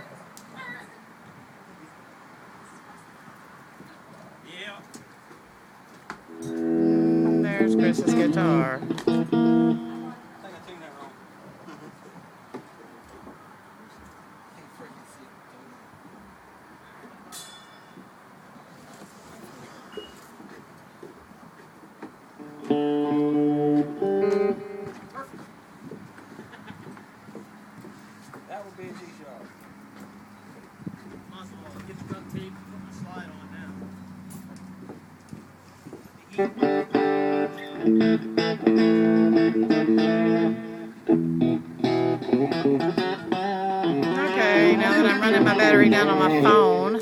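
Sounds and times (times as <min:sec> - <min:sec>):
guitar chord strummed: 0:06.3 - 0:10.3, 0:22.4 - 0:25.0, 0:36.4 - 0:47.0.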